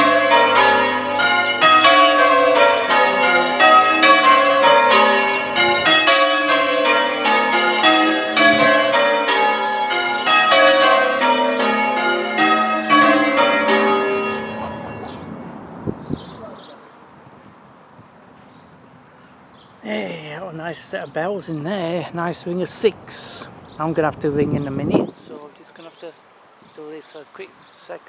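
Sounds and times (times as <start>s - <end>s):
church bells ringing changes: 0.0s - 16.4s.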